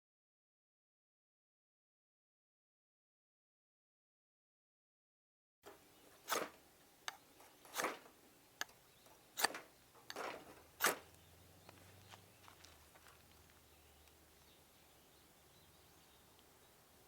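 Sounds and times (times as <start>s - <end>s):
dry firewood crackling: 7.4s - 14.7s.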